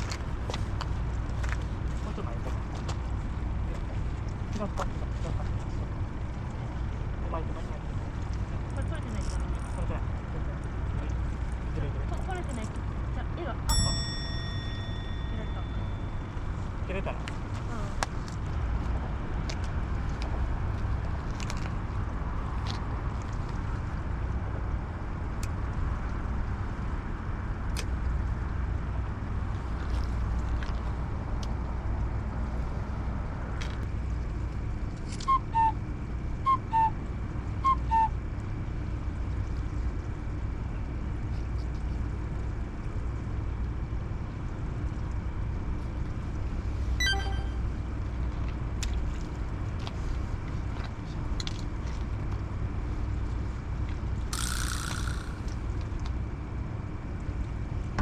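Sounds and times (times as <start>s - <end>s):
water: 0.0s - 58.0s
wind: 0.0s - 58.0s
short chirp: 47.0s - 47.7s
two-note electronic beeps: 47.0s - 47.7s.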